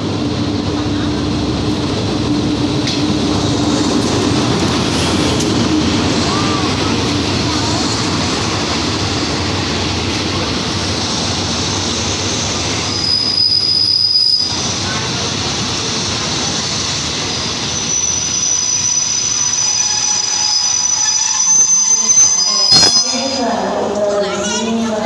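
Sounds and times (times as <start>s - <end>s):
train wheels rumbling on rails: 0.0s - 25.0s
high-pitched brake squeal: 12.6s - 14.6s, 17.6s - 23.8s.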